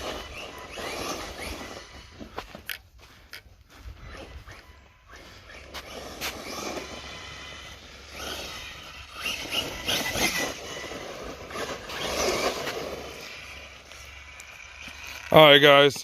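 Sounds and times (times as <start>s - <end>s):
electric motor whine: 0.0s - 2.7s, 3.9s - 15.7s
tyres rushing and chassis rattle: 5.5s - 16.0s.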